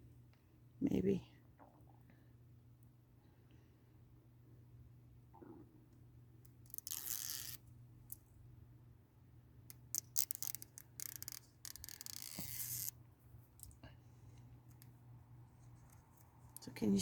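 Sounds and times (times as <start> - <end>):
tape backing peeling: 6.7 - 7.6, 9.7 - 12.9.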